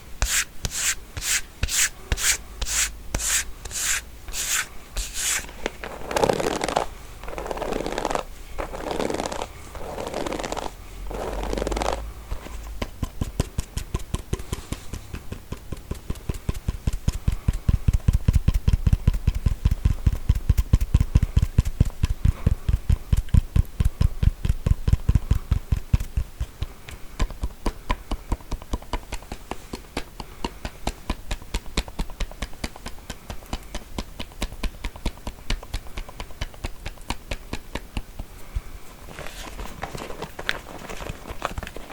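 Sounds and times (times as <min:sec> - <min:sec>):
comb scraping strokes: 0:00.0 - 0:12.7.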